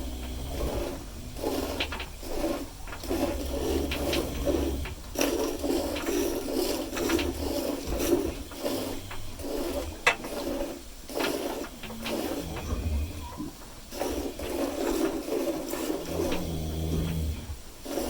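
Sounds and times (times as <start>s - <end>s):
milk squirting into a pail: 0.0s - 13.0s.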